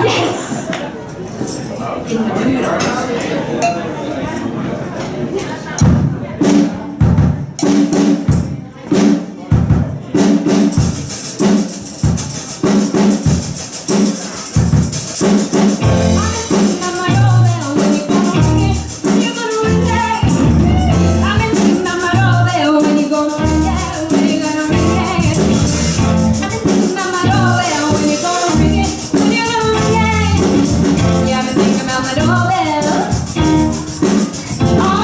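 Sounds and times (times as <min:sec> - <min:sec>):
rock song with percussion: 0:06.4 - 0:35.0
person singing: 0:15.8 - 0:35.0.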